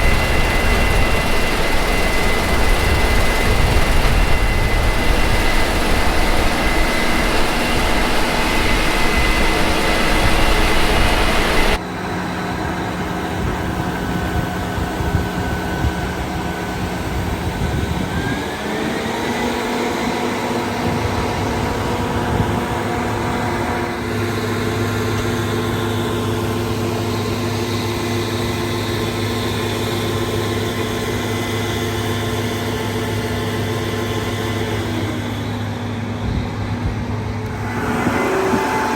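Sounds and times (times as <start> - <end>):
engine speeding up: 0.0 - 11.8
diesel machinery engine drone: 0.0 - 38.9.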